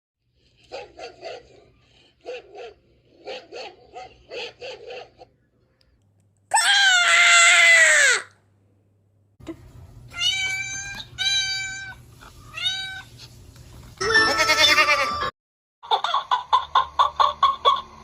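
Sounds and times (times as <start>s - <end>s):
dog barking: 0.6s - 5.3s.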